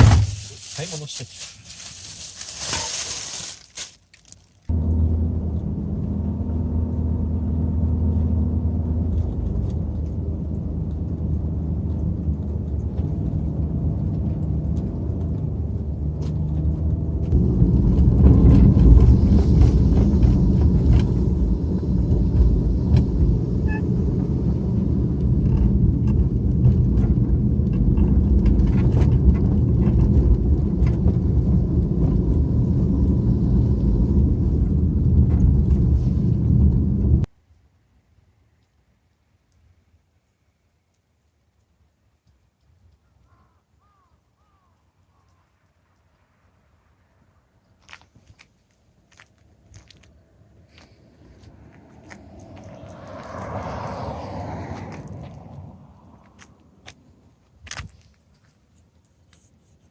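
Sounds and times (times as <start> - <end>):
road rumble: 0.0 - 40.2, 41.0 - 59.9
car engine hum: 4.7 - 37.3, 49.1 - 58.1.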